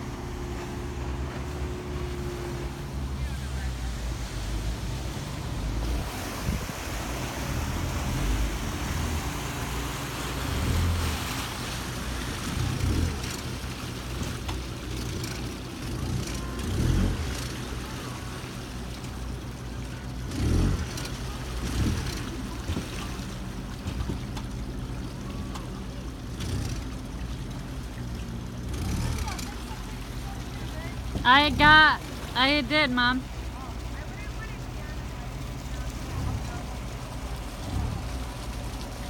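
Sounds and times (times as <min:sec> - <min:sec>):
boat engine humming: 0:00.0 - 0:39.0
wind gusting on microphone: 0:05.8 - 0:07.5.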